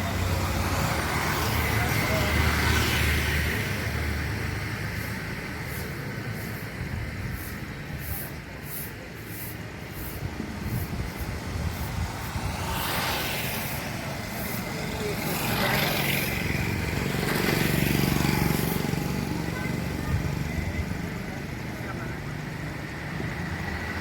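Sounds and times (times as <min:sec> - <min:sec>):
people chattering: 0:00.0 - 0:24.0
vehicle engines passing: 0:00.0 - 0:24.0
tyre hiss: 0:04.8 - 0:14.8.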